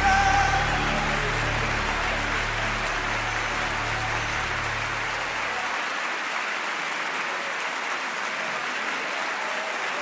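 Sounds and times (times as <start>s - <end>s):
audience applause: 0.0s - 10.0s.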